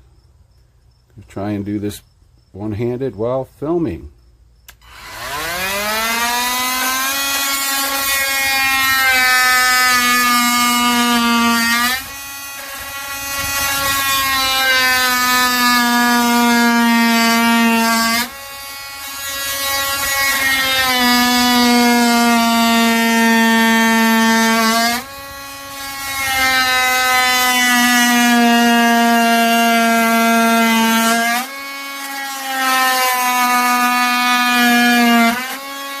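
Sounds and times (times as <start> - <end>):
multi-tool motor buzzing whine: 4.7 - 36.0.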